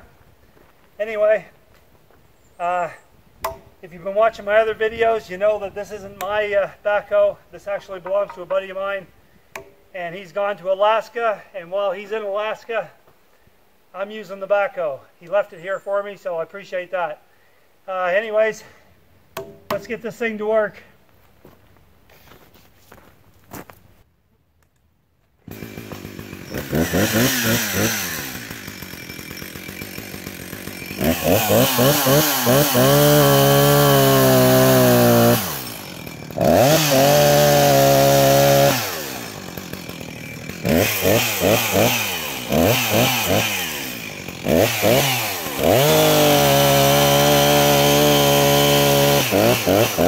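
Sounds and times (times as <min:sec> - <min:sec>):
engine revving: 0:25.6 - 0:28.8, 0:30.9 - 0:39.7, 0:40.5 - 0:50.0.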